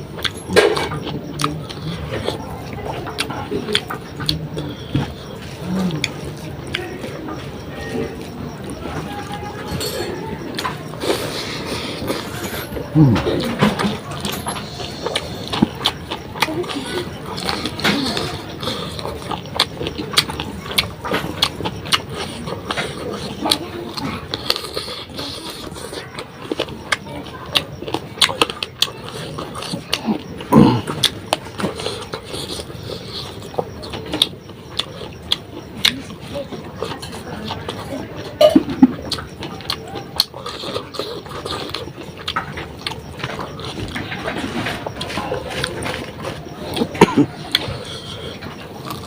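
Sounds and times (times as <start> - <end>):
person chewing: 0.0 - 49.0
mouth clicks and smacks: 10.1 - 49.0.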